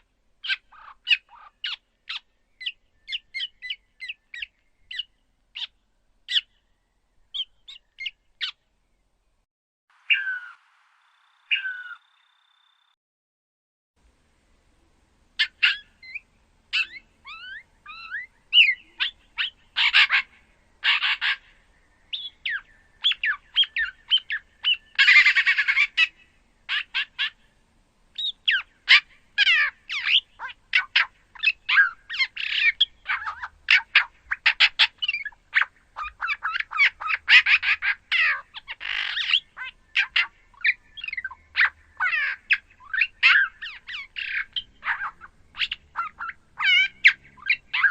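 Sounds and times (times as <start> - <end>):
songbird chatter of chirps: 0.0 - 9.1, 11.2 - 13.0, 14.8 - 47.9
harsh rasping squawks: 28.5 - 47.9.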